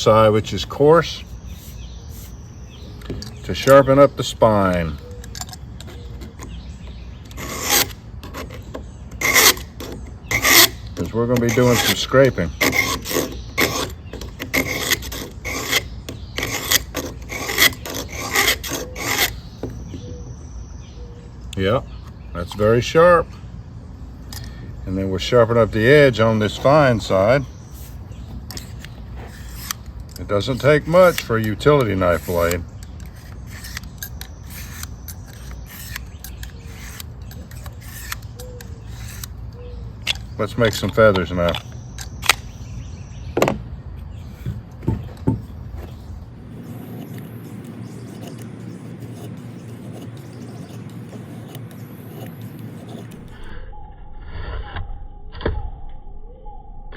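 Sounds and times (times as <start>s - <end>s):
blade rasping on sharpening stone: 7.3s - 20.0s, 25.8s - 39.4s, 46.6s - 53.5s.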